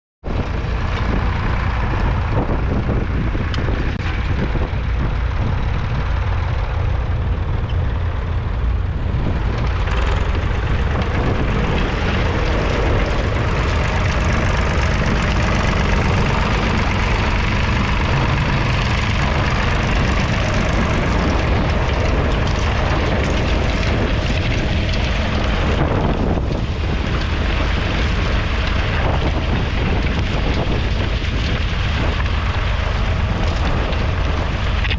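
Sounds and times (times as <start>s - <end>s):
tractor diesel engine rumbling: 0.3s - 34.9s.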